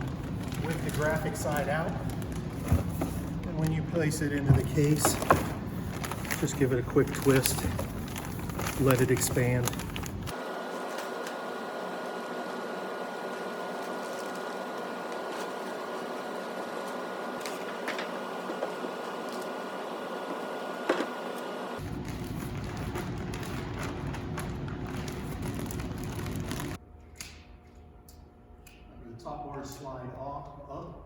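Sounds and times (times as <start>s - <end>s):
mechanical hum: 0.0s - 31.0s
heavy low rumble: 21.8s - 26.8s.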